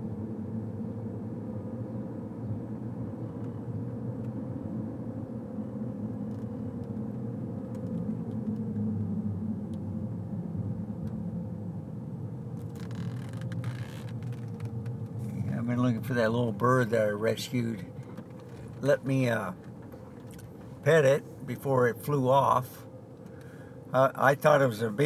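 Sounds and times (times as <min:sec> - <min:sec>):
motor rumbling: 0:12.6 - 0:25.0.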